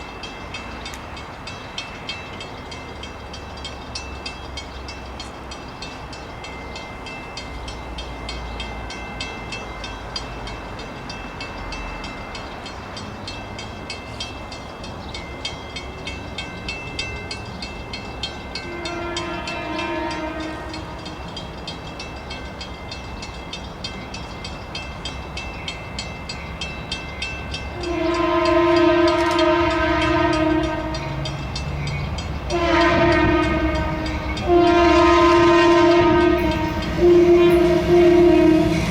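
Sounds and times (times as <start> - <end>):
diesel locomotive rumbling: 0.0 - 38.9
locomotive air horn blasts: 18.7 - 21.0, 27.8 - 31.4, 32.5 - 38.9.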